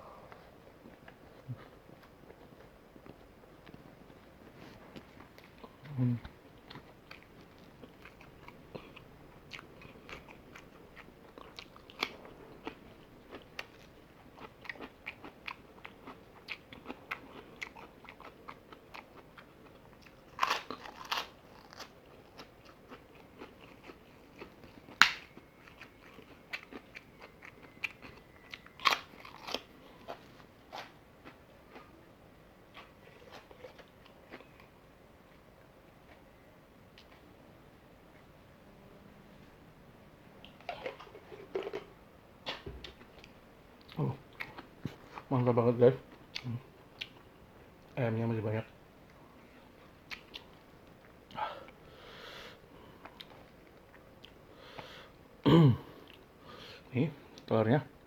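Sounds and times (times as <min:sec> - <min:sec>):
fried chicken chewing crunches: 0:00.9 - 0:31.9.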